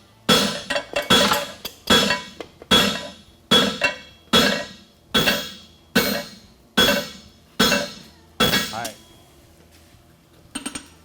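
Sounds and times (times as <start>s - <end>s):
hammer striking steel on anvil: 0.3s - 9.0s.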